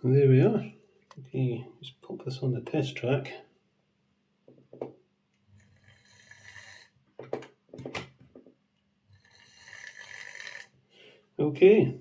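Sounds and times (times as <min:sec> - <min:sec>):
model train motor whirring: 0:05.7 - 0:06.9, 0:09.2 - 0:10.7
knocks of model being handled: 0:07.2 - 0:08.6.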